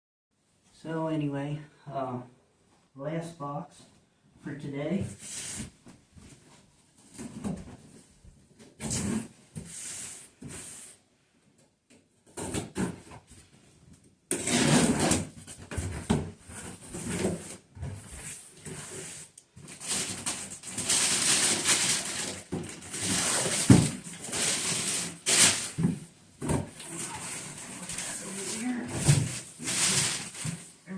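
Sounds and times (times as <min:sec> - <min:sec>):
cardboard rustling and tearing: 0:14.3 - 0:30.9.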